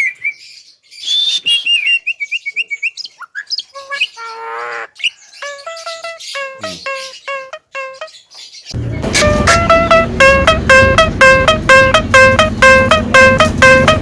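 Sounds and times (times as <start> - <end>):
myna bird calling: 2.9 - 8.8.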